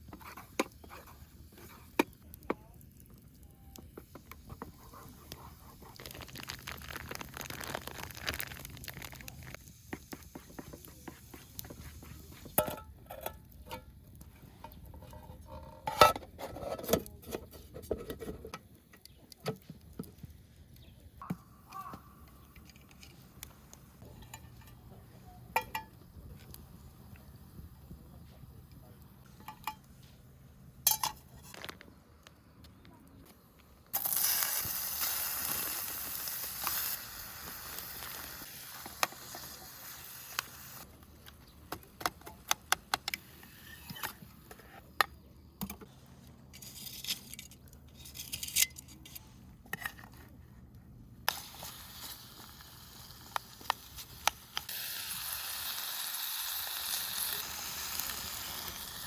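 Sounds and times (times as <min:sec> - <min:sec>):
cooking utensils clinking: 0:25.5 - 0:26.0, 0:29.3 - 0:29.9
food sizzling in a pan: 0:34.0 - 0:40.8, 0:51.4 - 0:59.0.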